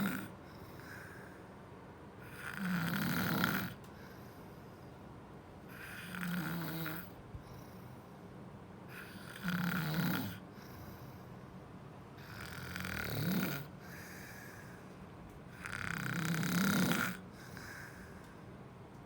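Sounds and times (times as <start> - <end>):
snoring: 0.0 - 1.4, 2.2 - 3.8, 5.7 - 7.8, 8.9 - 11.0, 12.2 - 14.7, 15.5 - 18.0
quiet breathing: 0.0 - 2.6, 3.8 - 6.3, 7.3 - 9.4, 10.4 - 12.8, 13.5 - 16.1, 17.0 - 18.7.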